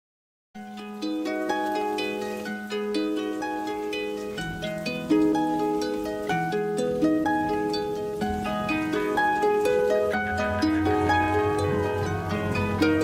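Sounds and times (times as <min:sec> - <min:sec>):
plucked string melody: 0:00.6 - 0:13.0
held low notes: 0:03.6 - 0:13.0.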